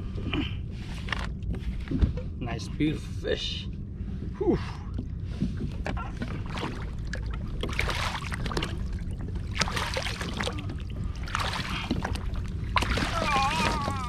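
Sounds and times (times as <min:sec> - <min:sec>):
steady low rumble: 0:00.0 - 0:14.0
water sloshing around kayak: 0:04.0 - 0:14.0.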